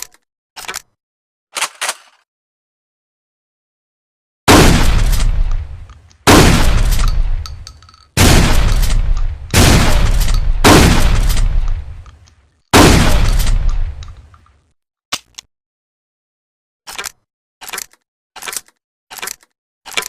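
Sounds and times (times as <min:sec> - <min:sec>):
shotgun shots with echo: 0:04.5 - 0:07.4, 0:08.2 - 0:12.0, 0:12.8 - 0:14.0.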